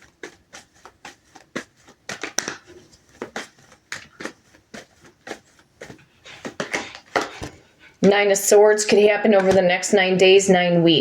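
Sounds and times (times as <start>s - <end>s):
cards shuffling: 0.0s - 7.6s.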